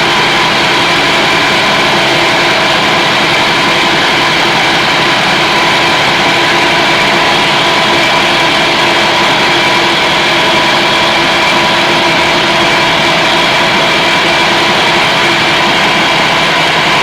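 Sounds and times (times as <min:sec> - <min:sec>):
meat grinding machine running: 0:00.0 - 0:17.0.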